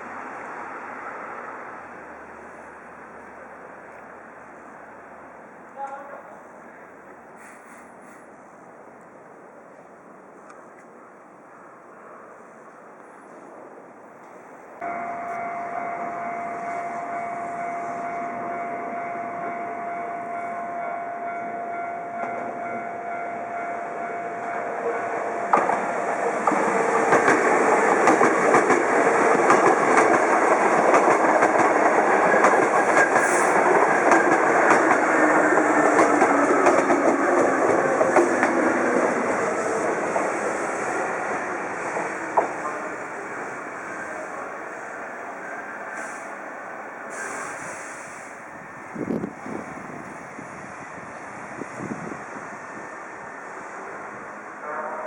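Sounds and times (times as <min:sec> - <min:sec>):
steady high tone: 0:14.8 - 0:27.9
train motor hum: 0:23.7 - 0:44.6
train wheels clattering over rail joints: 0:25.5 - 0:39.5.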